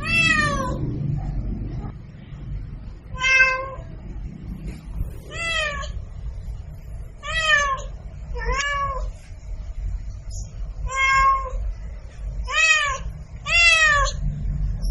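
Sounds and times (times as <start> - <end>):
cat meowing: 0.0 - 0.9, 3.0 - 3.9, 5.1 - 6.0, 7.2 - 9.2, 10.8 - 11.6, 12.4 - 14.2
low steady rumble: 0.0 - 14.9.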